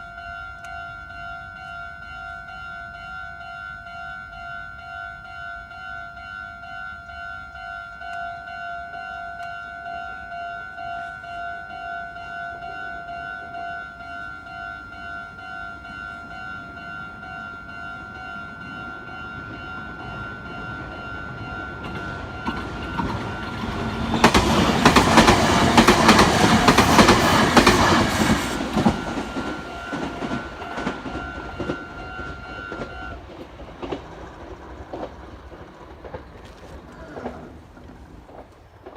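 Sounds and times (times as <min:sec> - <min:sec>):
level-crossing warning bell ringing: 0:00.0 - 0:37.1
electric train passing: 0:00.0 - 0:38.9
train wheels clattering over rails: 0:18.4 - 0:38.9.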